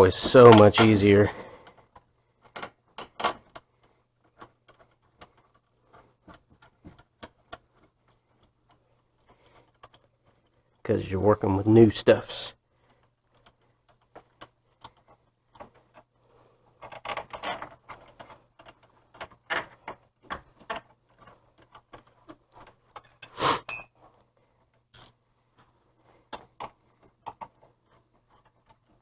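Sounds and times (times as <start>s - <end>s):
metal tools clinking and clanking: 0.1s - 1.3s, 22.9s - 24.0s.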